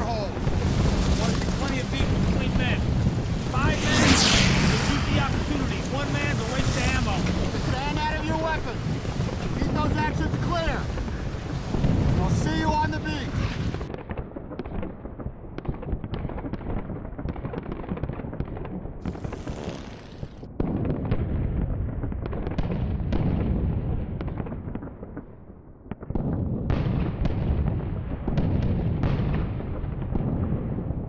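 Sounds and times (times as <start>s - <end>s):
rapid gunfire cracks: 0.0s - 21.4s
rumble of explosions: 0.0s - 31.0s.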